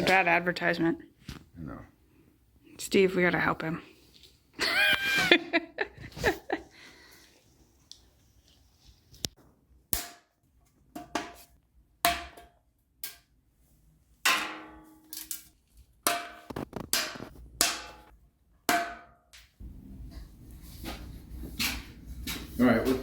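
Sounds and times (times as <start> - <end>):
hammer striking metal: 12.1 - 13.2, 14.2 - 15.4, 16.1 - 18.1, 18.7 - 19.2.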